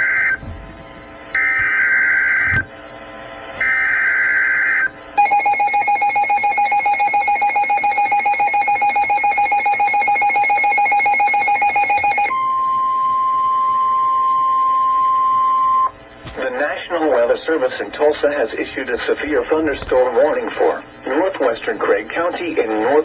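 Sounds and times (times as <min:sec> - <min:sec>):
steady single-pitch alarm tone: 0:00.0 - 0:00.5, 0:01.2 - 0:03.0, 0:03.6 - 0:16.0.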